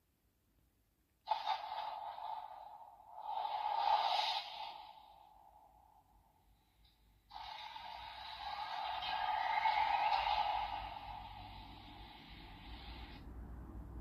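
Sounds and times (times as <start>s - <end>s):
electronic rushing sound effect: 7.3s - 13.2s.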